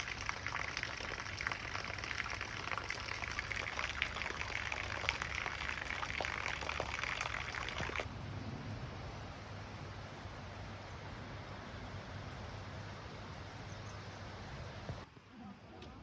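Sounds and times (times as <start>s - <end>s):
raindrops ticking on surfaces: 0.0s - 8.1s
steady rain falling: 0.0s - 8.1s.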